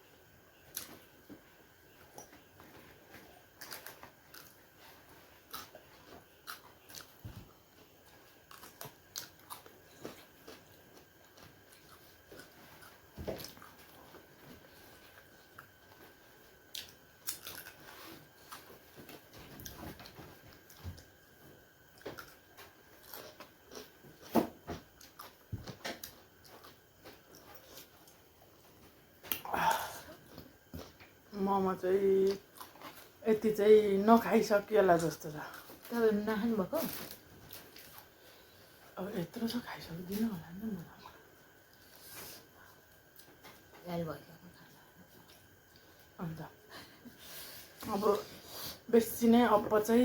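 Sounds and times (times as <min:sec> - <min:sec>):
person chewing food: 0:01.8 - 0:31.3, 0:32.3 - 0:33.2, 0:37.0 - 0:39.0.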